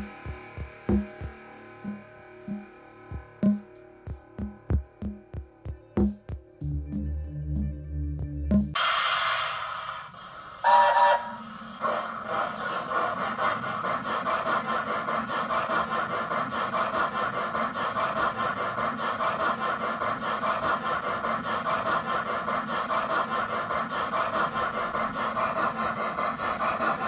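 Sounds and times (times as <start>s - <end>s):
model steam locomotive chuffs: 8.8s - 27.0s.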